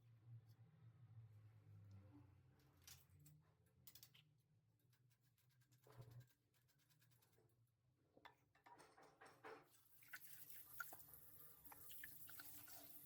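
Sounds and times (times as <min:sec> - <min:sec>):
faint water drips: 0:09.8 - 0:13.0.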